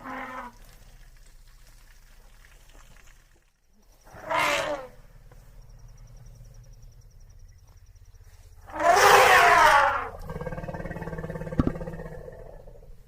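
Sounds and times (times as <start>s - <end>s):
elephant call: 0.0s - 0.6s, 4.0s - 7.4s, 8.6s - 13.0s
steady low rumble: 4.9s - 8.6s.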